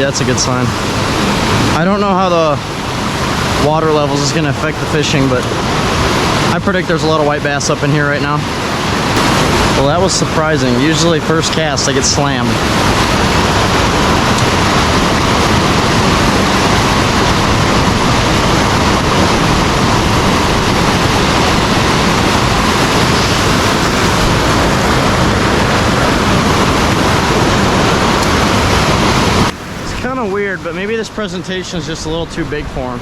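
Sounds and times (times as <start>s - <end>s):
water rushing through spillway: 0.0s - 33.0s.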